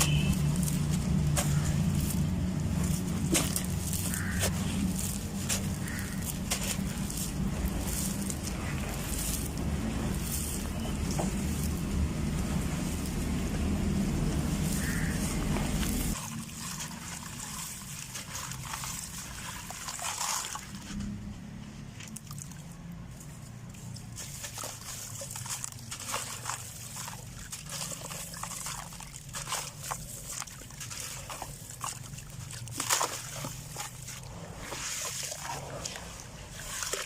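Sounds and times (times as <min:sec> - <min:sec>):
low rumble: 0:00.0 - 0:16.2
dried cement crumbling: 0:00.0 - 0:21.2.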